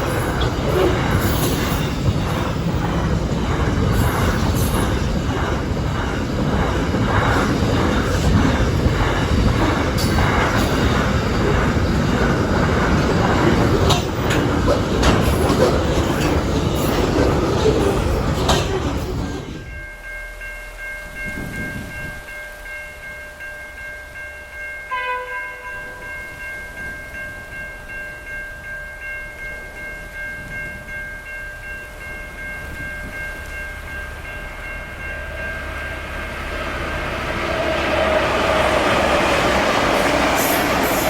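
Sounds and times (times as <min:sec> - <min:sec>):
train wheels clattering over rail joints: 0:00.0 - 0:19.6
high ringing from wheels and rails: 0:00.0 - 0:41.0.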